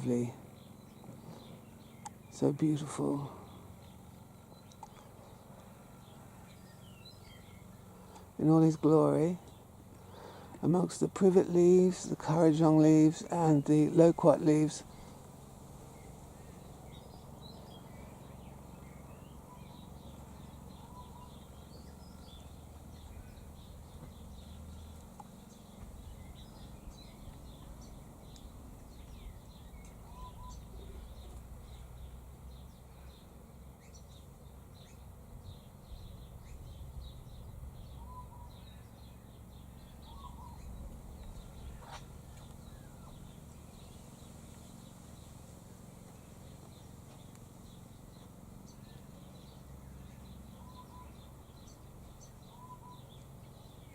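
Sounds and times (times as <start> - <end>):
birds chirping: 0.0 - 53.9
steady low rumble: 0.0 - 53.9
low whistled bird notes: 16.5 - 25.0, 25.7 - 32.1, 35.6 - 44.0, 48.8 - 53.9.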